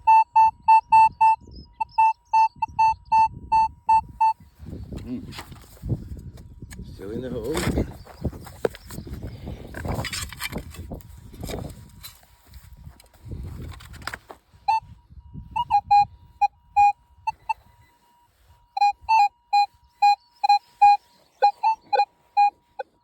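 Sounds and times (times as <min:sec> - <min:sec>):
metal detector beeps: 0:00.0 - 0:04.8, 0:14.5 - 0:23.0
faint steady tone: 0:14.5 - 0:23.0.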